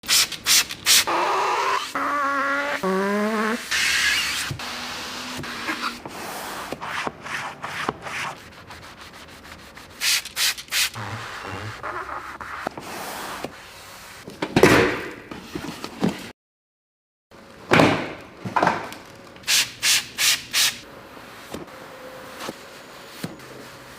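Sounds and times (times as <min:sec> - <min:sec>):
rubbing and scrubbing on car surface: 0:01.4 - 0:14.2.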